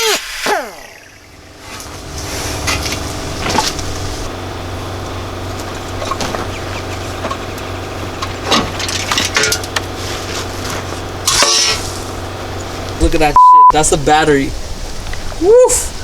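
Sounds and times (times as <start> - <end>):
steady low hum: 0.0 - 15.2
truck parts knocking and cracking: 5.0 - 12.7.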